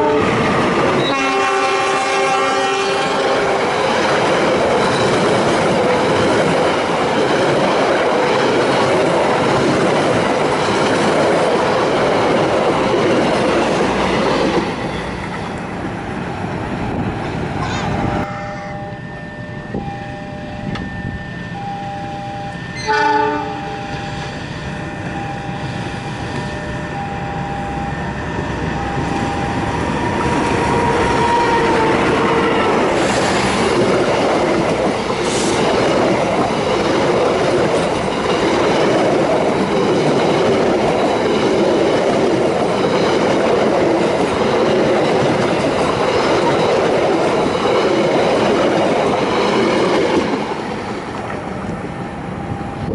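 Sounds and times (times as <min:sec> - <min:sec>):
train horn blast: 0:00.0 - 0:00.4, 0:01.0 - 0:03.6, 0:17.7 - 0:19.0, 0:22.8 - 0:25.2, 0:30.7 - 0:32.6
train wheels clattering on rails: 0:00.0 - 0:15.9, 0:28.7 - 0:51.9
level-crossing alarm tone: 0:18.0 - 0:45.3, 0:46.0 - 0:52.9
brief horn beep: 0:18.1 - 0:25.7.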